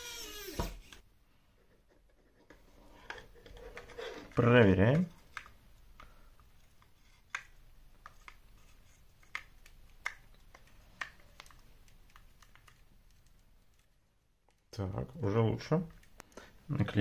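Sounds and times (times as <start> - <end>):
plastic headphone clicks and creaks: 2.5 - 13.9.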